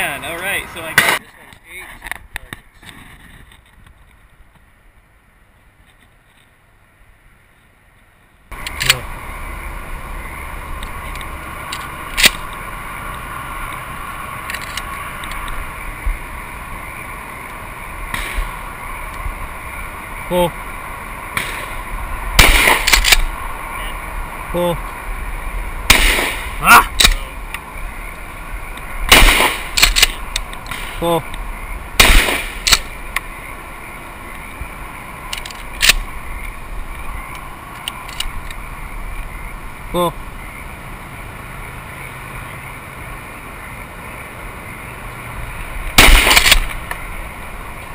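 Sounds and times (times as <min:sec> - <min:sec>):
highway traffic hum: 0:00.0 - 0:47.9
sharp loud crack: 0:00.9 - 0:01.3, 0:18.1 - 0:18.6, 0:21.3 - 0:23.4, 0:25.8 - 0:27.4, 0:29.0 - 0:31.2, 0:32.0 - 0:33.0, 0:46.0 - 0:46.9
shotgun shot: 0:01.0 - 0:01.2, 0:18.1 - 0:18.5, 0:21.4 - 0:21.8, 0:22.4 - 0:23.3, 0:25.9 - 0:27.3, 0:29.1 - 0:31.0, 0:32.0 - 0:32.9, 0:46.0 - 0:46.8
faint clicks: 0:37.3 - 0:38.6.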